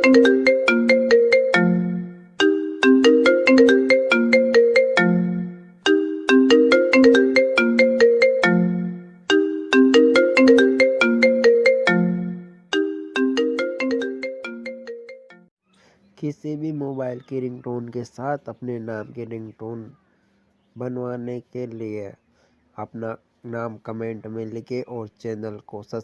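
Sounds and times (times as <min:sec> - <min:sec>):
mobile phone ringtone melody: 0:00.0 - 0:15.5.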